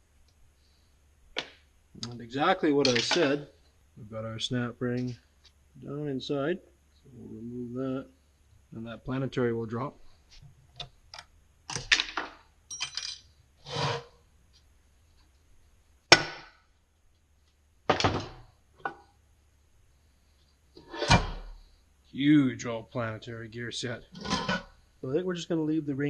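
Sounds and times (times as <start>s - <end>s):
hand tools clinking on metal parts: 2.8s - 3.3s, 12.7s - 13.2s.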